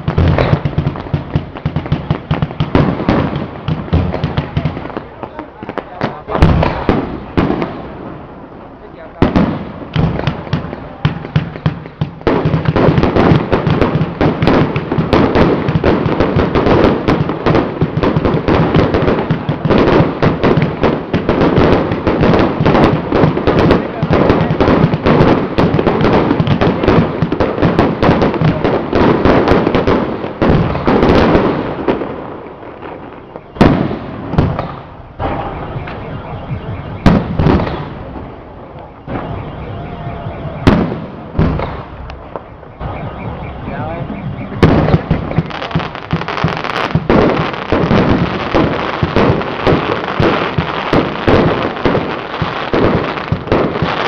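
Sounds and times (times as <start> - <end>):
firecrackers crackling: 0.0 - 54.0.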